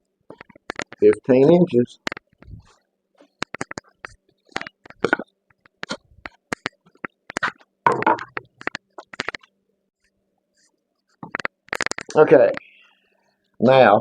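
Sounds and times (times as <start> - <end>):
clicks and knocks handling wood: 0.3 - 1.2, 3.2 - 9.5.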